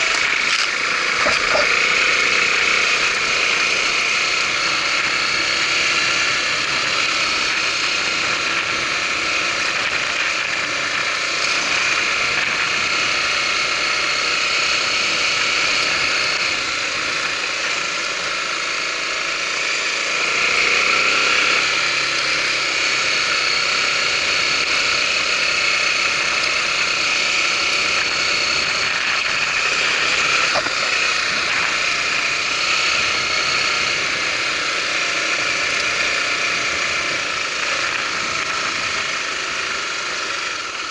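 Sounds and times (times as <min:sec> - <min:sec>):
motorcycle engine running: 0:00.0 - 0:40.9.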